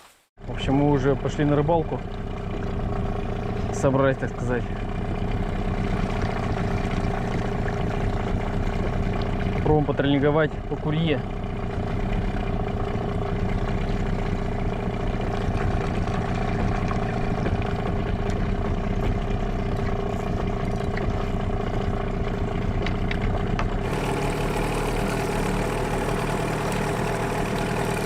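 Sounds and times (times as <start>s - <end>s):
outboard motor droning: 0.4s - 28.0s.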